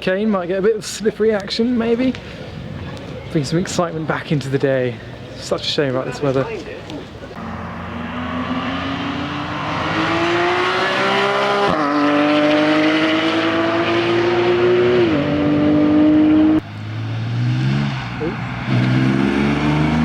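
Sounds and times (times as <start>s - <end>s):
car engine accelerating hard: 7.4s - 20.0s.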